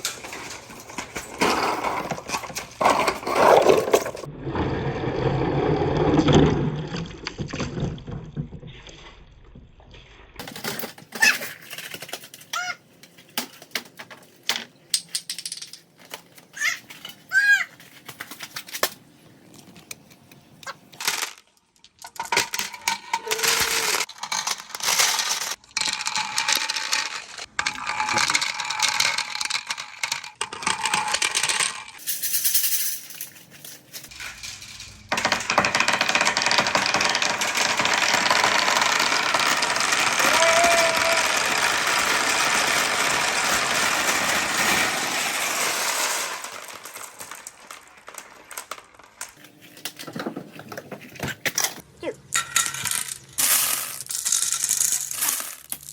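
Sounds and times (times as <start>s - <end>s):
marbles rattling down wooden run: 22.3s - 32.6s, 34.1s - 49.4s, 52.4s - 55.9s.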